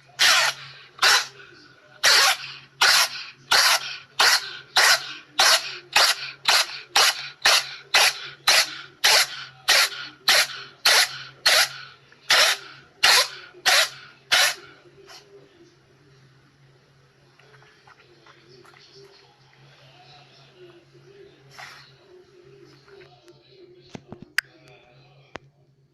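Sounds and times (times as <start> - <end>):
cat sneezing: 2.0 - 14.6.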